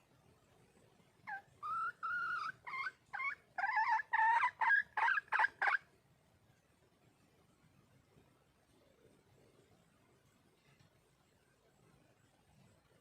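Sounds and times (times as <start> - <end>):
hen clucking calls: 1.3 - 5.8.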